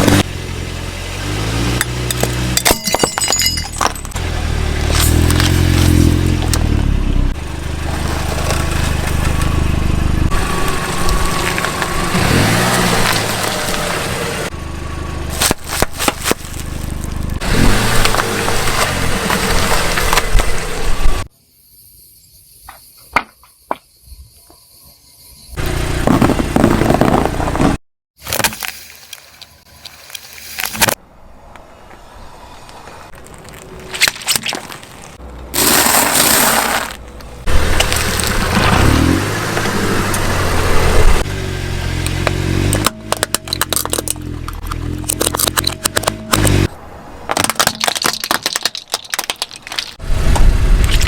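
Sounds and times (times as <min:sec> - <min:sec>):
car engine running: 0:00.0 - 0:21.3, 0:25.6 - 0:27.8, 0:33.1 - 0:51.0
sharp cracks and crunches: 0:04.8 - 0:06.7, 0:10.6 - 0:13.9, 0:15.3 - 0:20.7, 0:28.2 - 0:31.0, 0:33.1 - 0:40.2, 0:42.0 - 0:46.7, 0:47.3 - 0:51.0
tyres crushing objects: 0:10.6 - 0:13.9, 0:15.3 - 0:20.6, 0:26.0 - 0:29.0, 0:33.1 - 0:39.8, 0:42.0 - 0:50.0.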